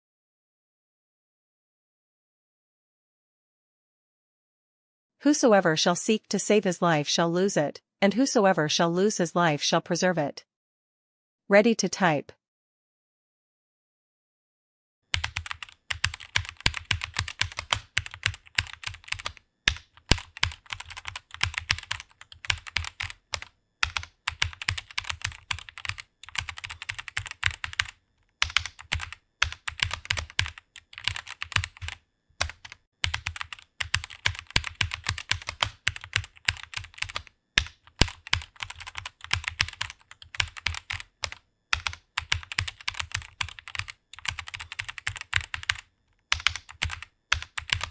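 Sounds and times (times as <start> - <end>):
keyboard typing clicks: 15.2 - 47.9.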